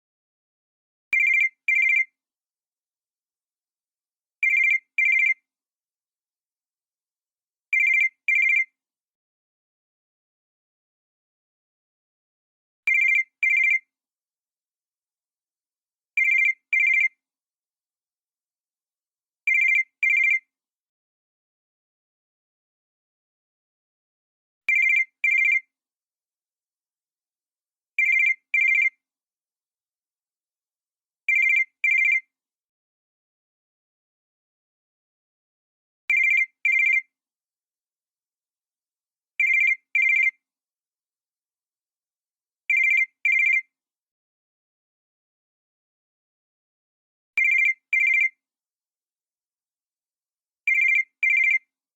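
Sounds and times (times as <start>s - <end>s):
cell phone ringing: 1.2s - 2.1s, 4.4s - 5.4s, 7.7s - 8.7s, 12.9s - 13.9s, 16.2s - 17.1s, 19.5s - 20.5s, 24.7s - 25.7s, 28.0s - 29.0s, 31.3s - 32.2s, 36.1s - 37.0s, 39.4s - 40.4s, 42.7s - 43.7s, 47.4s - 48.3s, 50.7s - 51.6s
cell phone ringtone trills: 36.1s - 37.0s, 39.4s - 40.4s, 50.7s - 51.6s.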